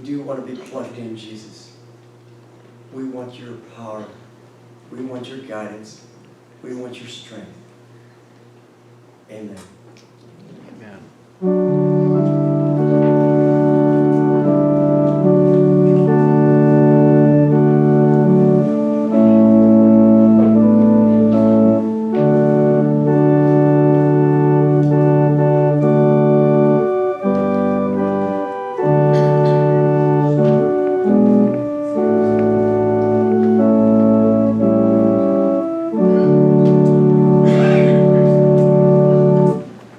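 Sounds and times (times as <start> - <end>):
organ playing slow chords: 11.2 - 39.8.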